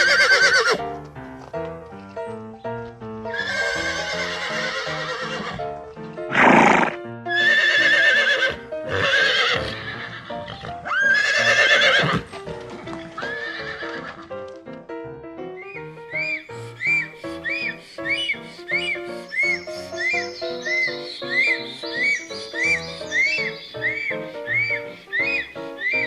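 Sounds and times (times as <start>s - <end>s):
horse neighing: 0.0s - 0.8s, 3.3s - 5.6s, 6.3s - 12.3s, 13.2s - 14.3s
background music: 0.0s - 26.0s.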